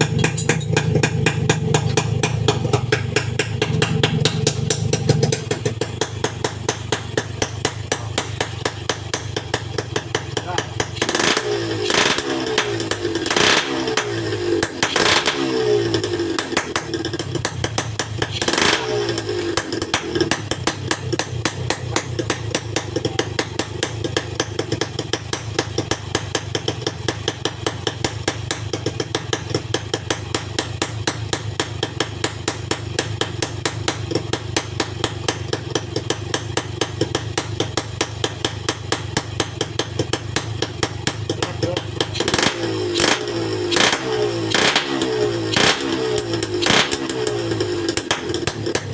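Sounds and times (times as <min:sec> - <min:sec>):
motorcycle engine revving and idling: 0:00.0 - 0:48.9.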